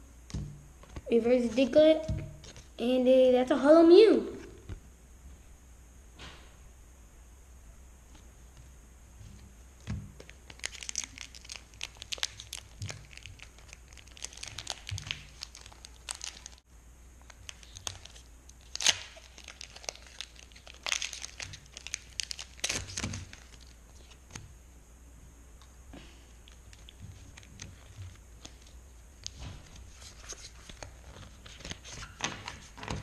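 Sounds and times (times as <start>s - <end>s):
foil wrapper crinkling and tearing: 10.2s - 16.6s, 17.2s - 24.2s.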